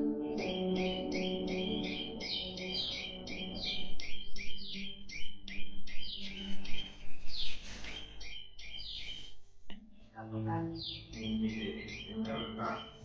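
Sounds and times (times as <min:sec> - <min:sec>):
background guitar music: 0:00.0 - 0:03.8
birds chirping: 0:00.0 - 0:13.0.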